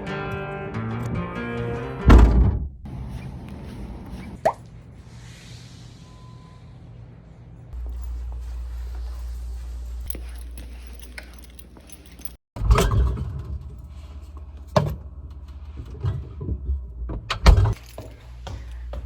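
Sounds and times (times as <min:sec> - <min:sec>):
keys jangling: 0:07.8 - 0:12.4, 0:17.8 - 0:18.9.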